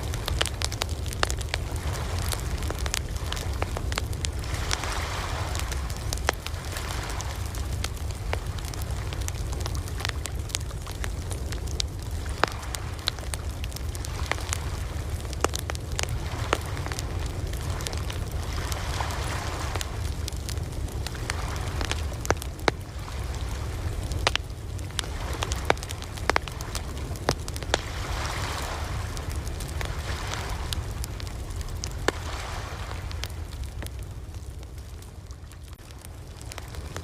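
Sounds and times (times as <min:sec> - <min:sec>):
ocean waves washing in: 0:00.0 - 0:09.2, 0:24.8 - 0:33.7
campfire crackling and popping: 0:00.0 - 0:37.0.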